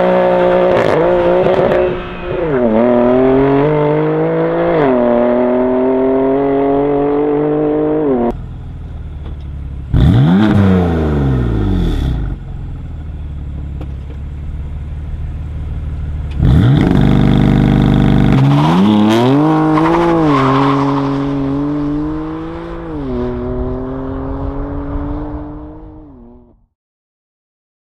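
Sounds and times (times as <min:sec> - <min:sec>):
car engine accelerating and revving: 0:00.0 - 0:08.4, 0:09.2 - 0:12.7, 0:16.2 - 0:26.6.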